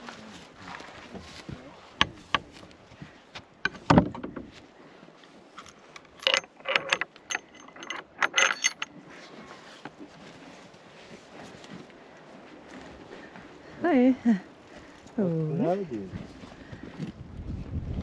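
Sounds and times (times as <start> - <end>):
horse tack jingling: 3.6 - 4.4, 5.5 - 9.0.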